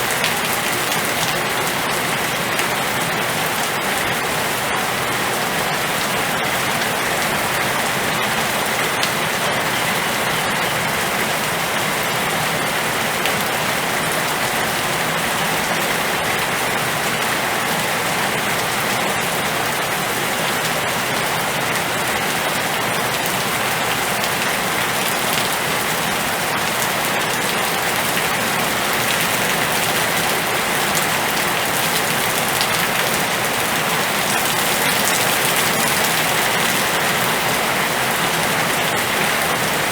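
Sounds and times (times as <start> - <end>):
steady rain hiss: 0.0 - 39.9
rain drop ticks: 26.7 - 39.6.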